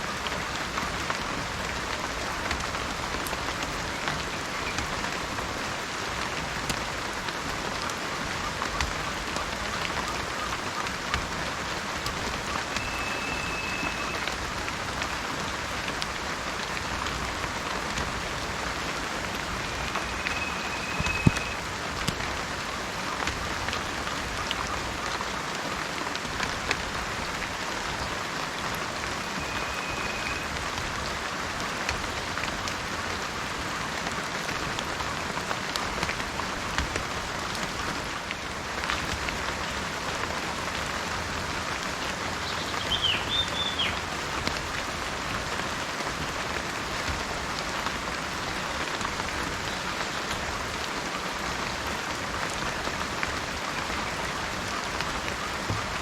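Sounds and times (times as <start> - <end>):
steady rain falling: 0.0 - 56.0
faint high whistles: 12.7 - 14.3, 19.6 - 21.6, 29.3 - 30.5.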